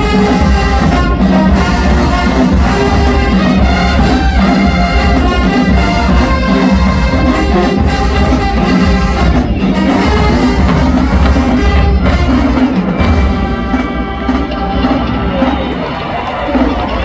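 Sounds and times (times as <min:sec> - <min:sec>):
marching band playing: 0:00.0 - 0:17.0.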